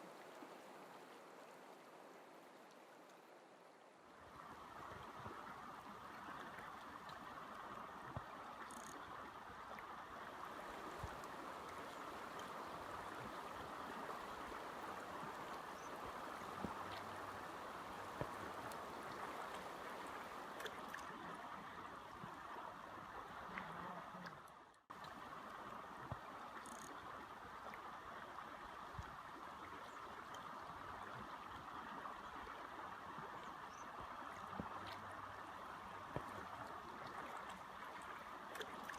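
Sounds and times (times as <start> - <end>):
rushing river water: 0.0 - 38.9
faint ticks: 8.1 - 9.1, 26.1 - 27.0.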